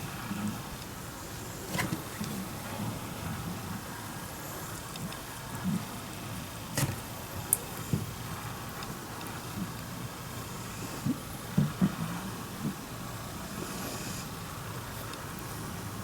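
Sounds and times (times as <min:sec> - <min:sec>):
cat snoring: 0:13.4 - 0:14.4.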